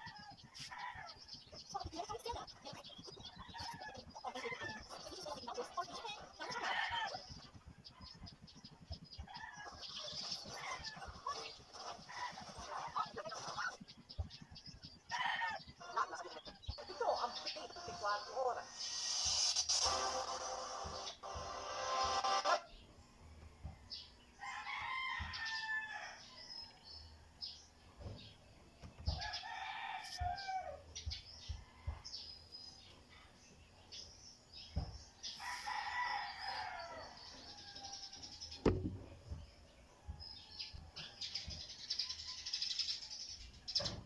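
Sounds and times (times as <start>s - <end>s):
sharp knock: 38.6s - 39.1s.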